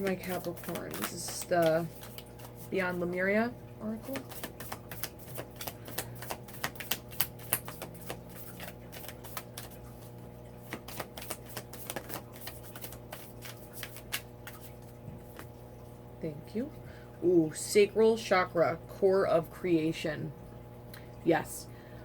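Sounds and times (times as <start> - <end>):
cards being shuffled: 0.0 - 3.0, 4.0 - 15.6
faint steady hum: 0.0 - 22.0.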